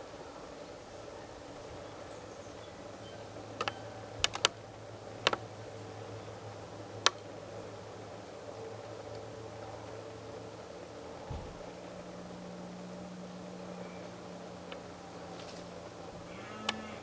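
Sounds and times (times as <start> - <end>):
faint steady hum: 0.0 - 17.0
sharp clicks: 3.6 - 4.6.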